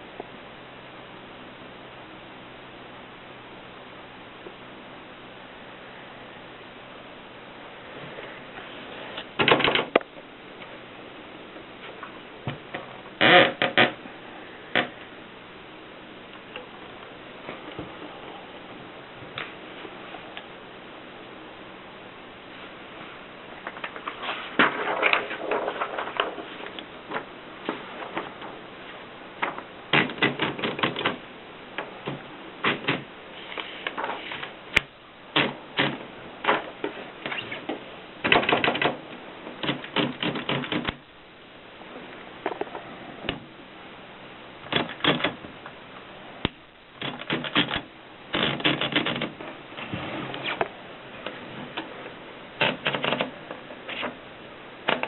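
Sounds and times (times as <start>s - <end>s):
typewriter keystrokes: 29.9s - 31.2s, 38.2s - 39.0s, 39.6s - 41.0s, 44.7s - 45.4s, 47.0s - 49.3s, 52.6s - 53.3s.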